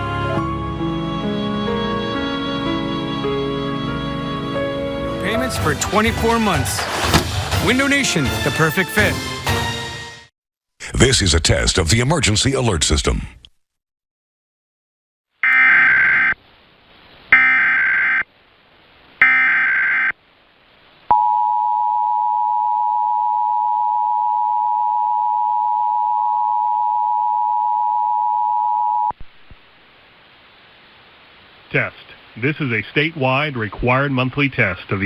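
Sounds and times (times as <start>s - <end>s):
screeching data tones: 15.4s - 16.4s, 17.3s - 18.3s, 19.2s - 20.2s.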